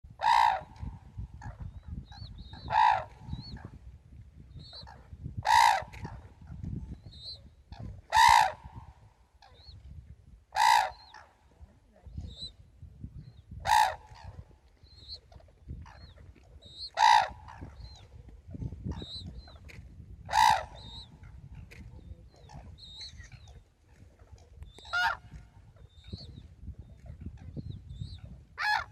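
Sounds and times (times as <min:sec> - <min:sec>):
cranes trumpeting calls: 0:00.2 - 0:01.6, 0:02.5 - 0:03.6, 0:04.7 - 0:06.3, 0:08.1 - 0:09.6, 0:10.6 - 0:11.4, 0:13.7 - 0:14.4, 0:16.8 - 0:18.1, 0:20.3 - 0:21.3, 0:24.8 - 0:25.4, 0:28.6 - 0:28.9.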